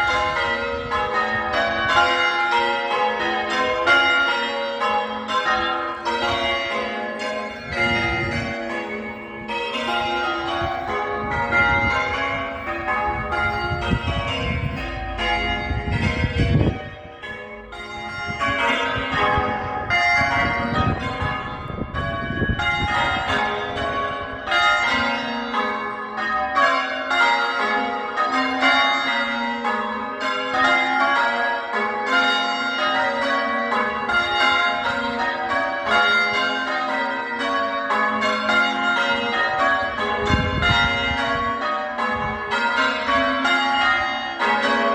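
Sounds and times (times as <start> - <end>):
church bells ringing: 0.0 - 44.9
low rumble: 7.5 - 20.0.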